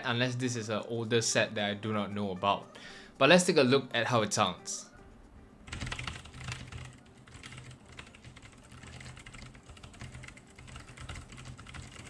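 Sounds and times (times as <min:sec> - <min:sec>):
fast typing on mechanical keyboard: 0:05.7 - 0:12.0.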